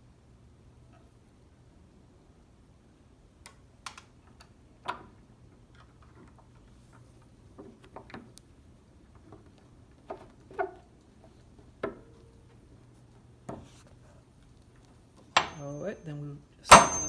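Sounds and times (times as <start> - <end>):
faint low hum: 0.0 - 17.0
tools clicking and knocking: 15.2 - 15.8, 16.7 - 17.0
metallic clinks: 15.4 - 16.1, 16.7 - 17.0.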